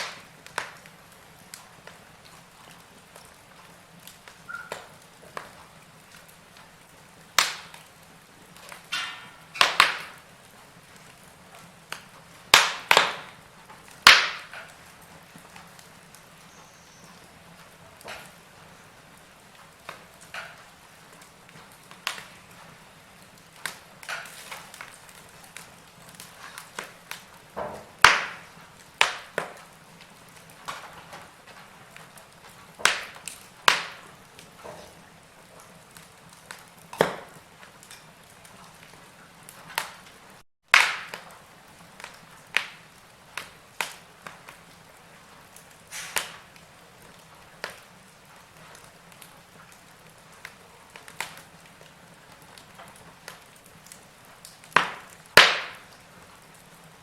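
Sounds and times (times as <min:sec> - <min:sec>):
faint steady hiss: 0:00.0 - 0:57.0
log fire crackling and popping: 0:00.0 - 0:57.0.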